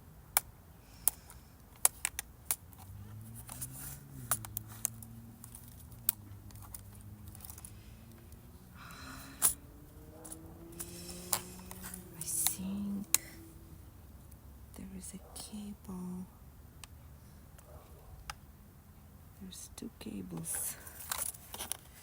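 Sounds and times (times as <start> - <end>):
plastic laptop parts clicking: 0.3 - 8.5
scraping rustle: 1.2 - 13.6.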